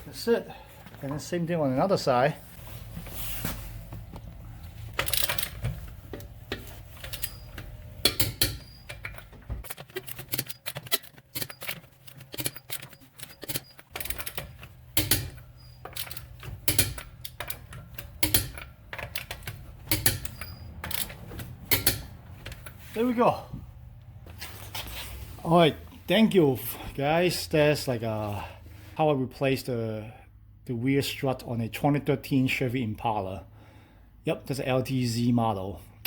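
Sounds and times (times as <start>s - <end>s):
hand tools clicking on metal: 5.0s - 22.8s.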